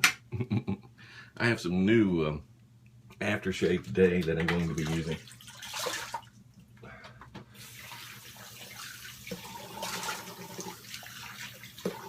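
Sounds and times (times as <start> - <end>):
tap water running into sink: 7.6 - 12.0.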